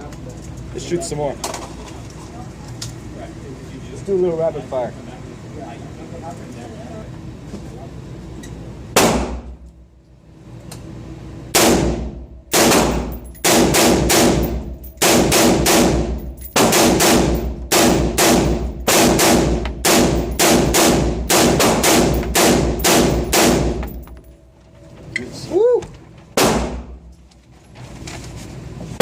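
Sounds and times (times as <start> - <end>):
rapid gunshots with echo: 11.6 - 23.8.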